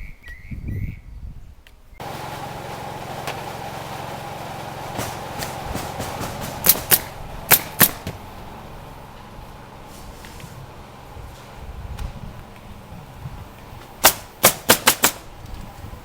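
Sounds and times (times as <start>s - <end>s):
sharp knocks and cracks on roof: 2.0s - 8.6s, 13.8s - 15.6s
steady motor hum: 2.0s - 16.0s.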